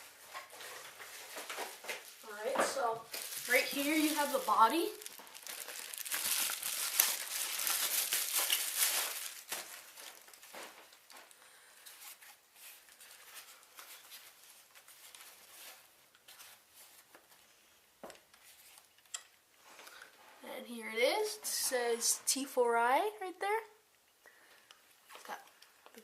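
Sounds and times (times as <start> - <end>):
plastic packaging crinkling: 0.5 - 11.3.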